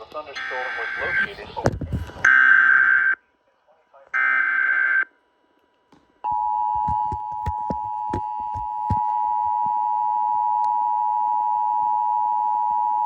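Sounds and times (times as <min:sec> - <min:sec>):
two-tone alert alarm: 0:00.4 - 0:01.4, 0:06.3 - 0:13.0.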